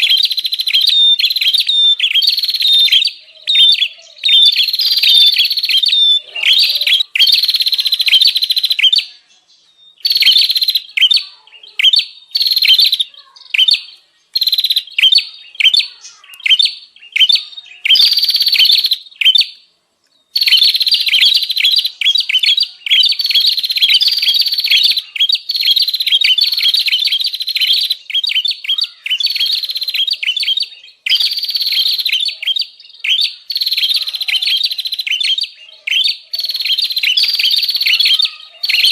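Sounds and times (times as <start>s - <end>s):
songbird chirping rapidly: 0.0s - 38.9s.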